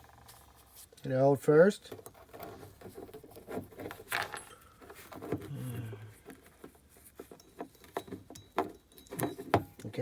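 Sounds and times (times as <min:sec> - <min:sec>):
metal parts clicking and rattling: 0:01.9 - 0:05.4
person humming: 0:05.5 - 0:06.1.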